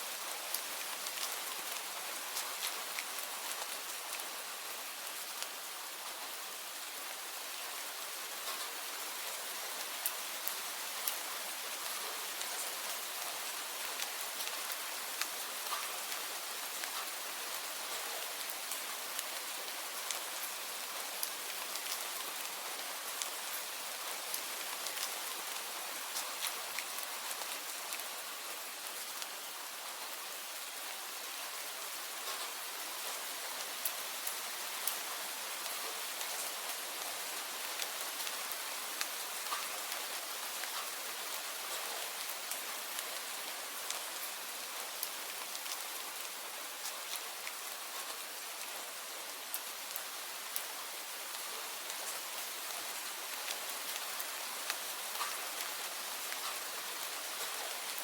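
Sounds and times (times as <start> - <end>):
steady rain hiss: 0.0 - 58.0
raindrop ticks: 13.8 - 17.2, 34.2 - 41.0, 45.0 - 48.1, 51.4 - 58.0.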